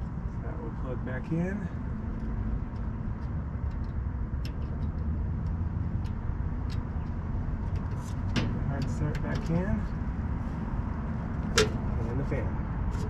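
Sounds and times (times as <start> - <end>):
low outdoor rumble: 0.0 - 13.0
wire connectors clicking: 2.2 - 9.5.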